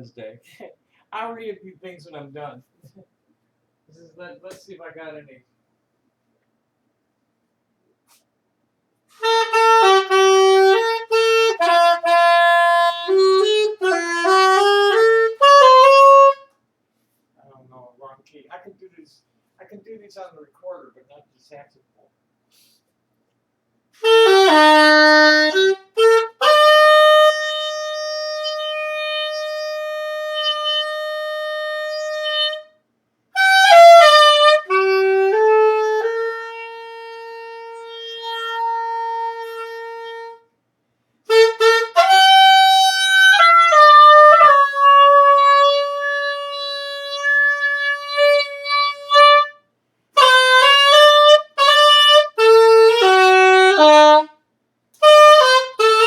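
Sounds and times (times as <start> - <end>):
saxophone melody: 9.1 - 16.6, 24.0 - 32.8, 33.4 - 40.5, 41.3 - 54.4, 55.0 - 56.0.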